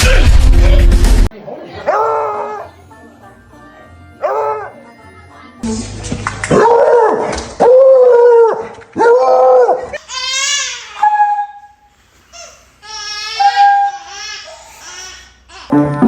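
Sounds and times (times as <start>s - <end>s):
dog yowling: 11.0s - 11.7s, 13.4s - 14.1s.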